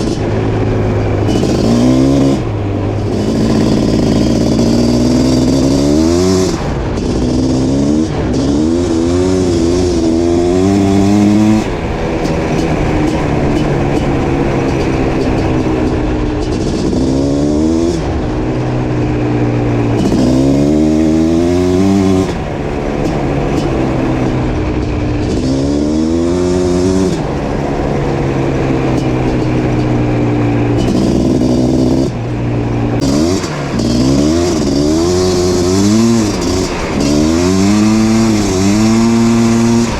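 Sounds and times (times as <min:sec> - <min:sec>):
quad bike engine revving: 0:00.0 - 0:39.9.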